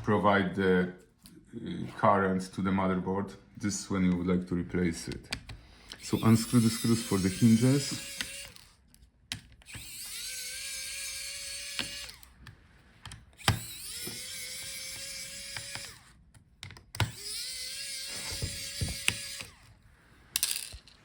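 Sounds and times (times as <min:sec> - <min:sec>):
electric screwdriver whining: 0:05.9 - 0:08.8, 0:09.5 - 0:16.2, 0:16.8 - 0:19.8
clicks and knocks of screws: 0:13.0 - 0:17.4.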